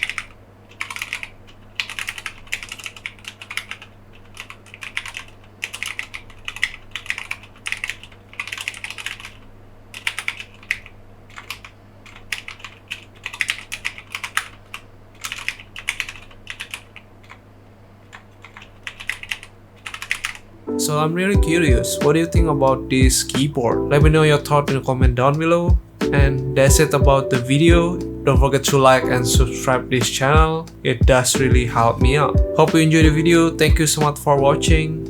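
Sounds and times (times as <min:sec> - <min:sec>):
mechanical keyboard typing: 0:00.0 - 0:23.6.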